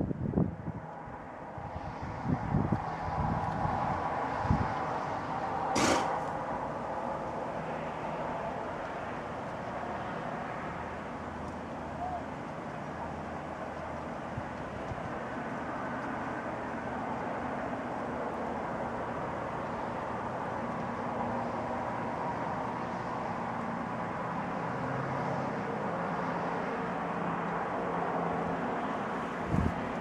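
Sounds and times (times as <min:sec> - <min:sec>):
brief sharp sound: 0:05.8 - 0:06.4.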